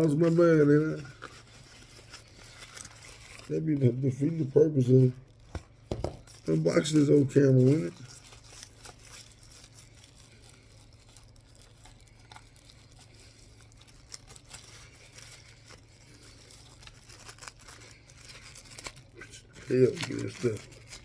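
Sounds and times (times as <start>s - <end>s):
packaging rustling and clicking: 5.0s - 21.0s.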